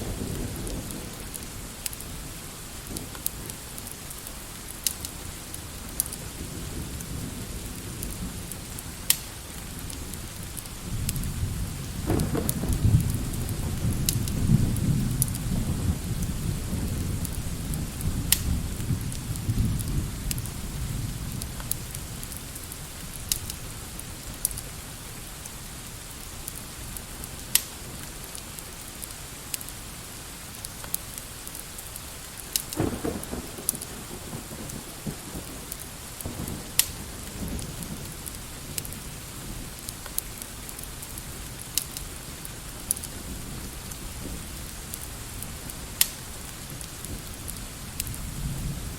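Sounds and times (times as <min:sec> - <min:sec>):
thunder rumbling: 0:00.0 - 0:03.9, 0:05.8 - 0:23.7, 0:32.8 - 0:39.9, 0:42.5 - 0:48.9
steady rain: 0:00.0 - 0:48.9
fireplace crackling: 0:01.1 - 0:06.4, 0:07.0 - 0:11.2, 0:21.4 - 0:32.8, 0:33.6 - 0:48.2.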